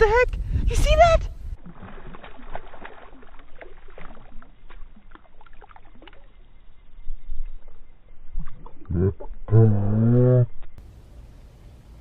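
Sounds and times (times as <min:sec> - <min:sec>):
water splashing and sloshing: 0:01.5 - 0:09.5.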